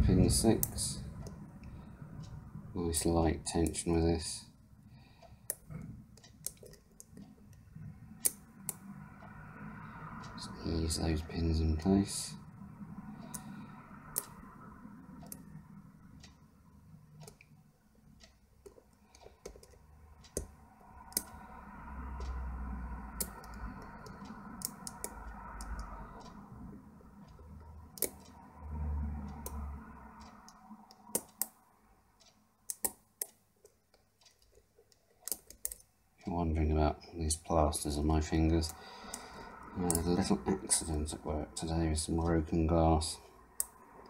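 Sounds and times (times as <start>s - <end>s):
low handling rumble: 0.0s - 3.4s
lock pick clicking on pins: 18.6s - 20.5s, 30.9s - 31.6s, 32.7s - 35.9s.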